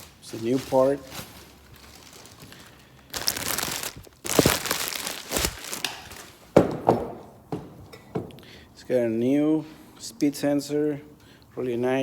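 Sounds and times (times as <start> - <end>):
plastic wrapping crinkling: 0.0 - 6.5
sharp knocks: 6.6 - 8.4.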